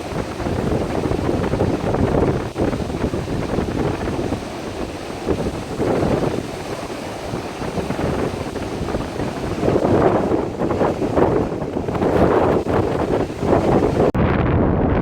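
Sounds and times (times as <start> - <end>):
sea waves washing up a beach: 0.0 - 14.2
wind rumbling on microphone: 0.0 - 15.0.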